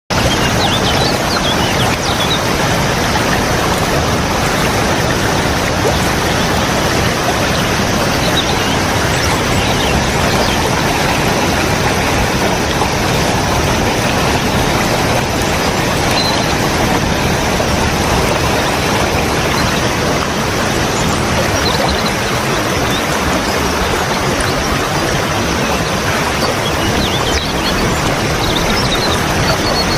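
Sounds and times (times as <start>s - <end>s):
waterfall rushing: 0.1s - 29.9s.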